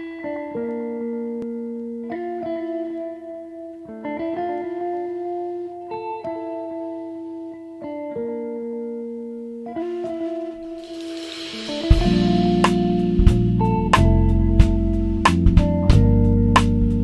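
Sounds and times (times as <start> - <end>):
guitar playing sustained chords: 0.0 - 17.0.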